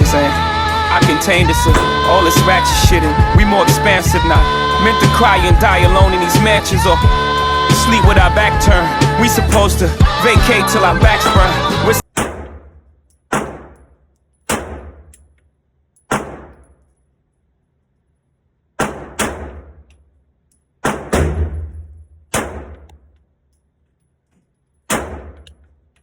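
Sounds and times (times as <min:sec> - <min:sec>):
pistol shots echoing: 0:12.1 - 0:15.2, 0:16.1 - 0:16.8, 0:18.8 - 0:19.9, 0:20.8 - 0:23.1, 0:24.9 - 0:25.6.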